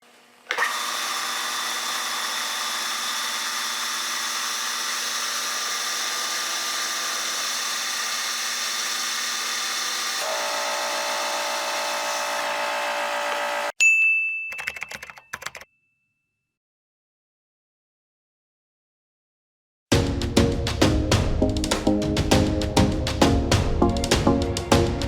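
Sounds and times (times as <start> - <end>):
drilling machine whine: 0.5 - 13.8.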